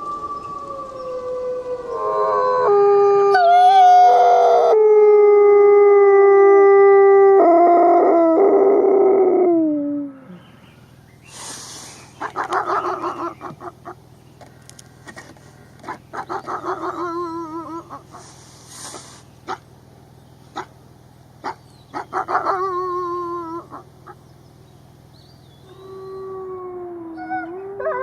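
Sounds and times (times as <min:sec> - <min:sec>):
wolves howling: 0:00.0 - 0:10.4, 0:15.9 - 0:18.1, 0:21.4 - 0:23.9, 0:25.6 - 0:28.0
low hum: 0:00.0 - 0:28.0
wolves yipping and whimpering: 0:12.2 - 0:14.0, 0:15.8 - 0:18.3, 0:21.4 - 0:23.9.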